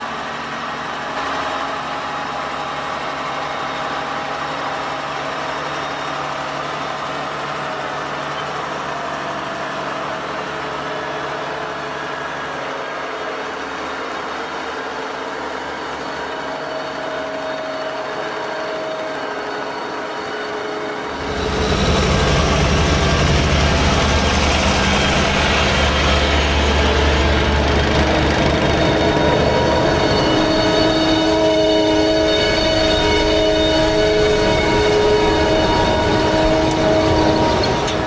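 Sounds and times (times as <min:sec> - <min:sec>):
machinery whining tones: 0:16.0 - 0:38.0
farm machinery engine under load: 0:21.1 - 0:30.9.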